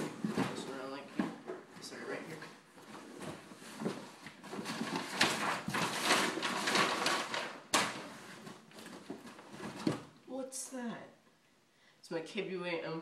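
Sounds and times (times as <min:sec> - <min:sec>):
packaging rustling and scraping: 0:01.3 - 0:10.1.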